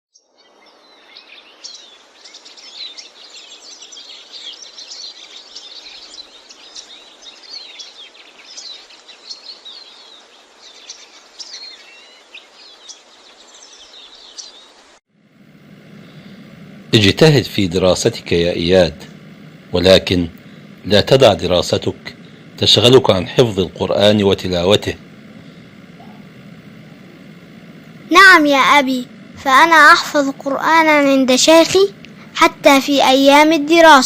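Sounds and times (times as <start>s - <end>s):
small birds chirping: 0.2s - 34.0s
steady hiss: 0.6s - 34.0s
faint steady tone: 15.1s - 34.0s.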